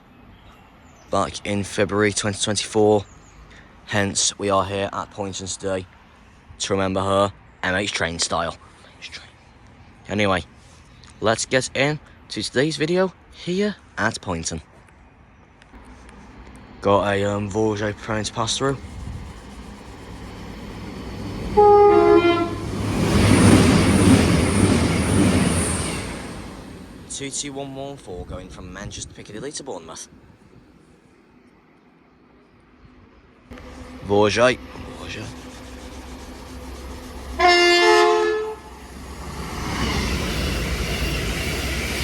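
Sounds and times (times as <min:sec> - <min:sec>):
high whine: 0:15.8 - 0:27.2, 0:33.5 - 0:42.0
train passing at speed: 0:15.8 - 0:28.4, 0:33.5 - 0:42.0
train horn two-note: 0:21.6 - 0:22.7, 0:37.3 - 0:38.8.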